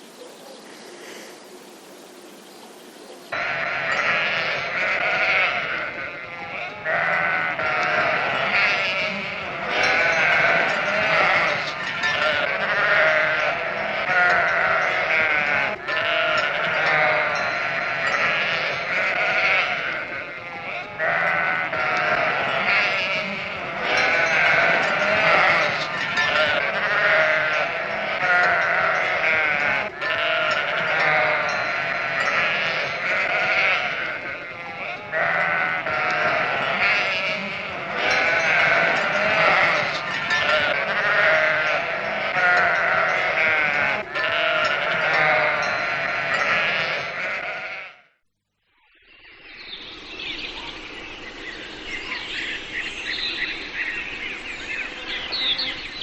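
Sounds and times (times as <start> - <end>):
animals bleating: 3.3 - 48.1.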